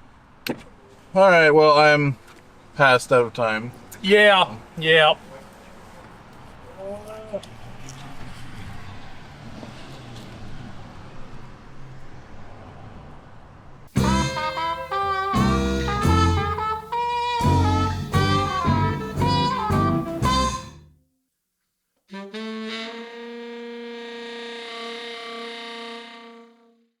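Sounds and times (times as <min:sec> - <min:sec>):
upbeat jazz tune with drums: 0:13.9 - 0:20.8
long held note: 0:14.0 - 0:20.9, 0:22.1 - 0:26.8.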